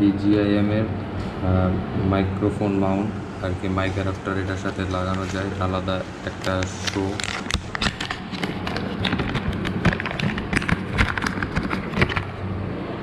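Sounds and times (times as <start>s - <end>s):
steady low hum: 0.0s - 13.0s
plastic accessories clicking and tapping: 6.3s - 12.3s.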